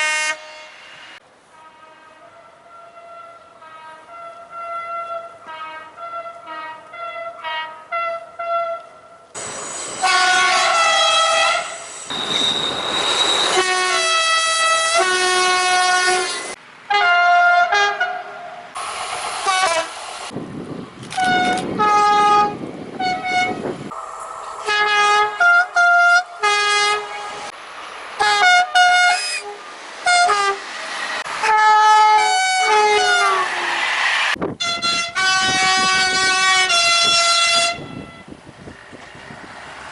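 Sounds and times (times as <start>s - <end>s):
train horns: 0.0s - 9.3s, 10.0s - 18.8s, 19.4s - 20.0s, 21.1s - 27.5s, 28.2s - 33.8s, 34.6s - 38.3s
passing train: 0.0s - 39.9s.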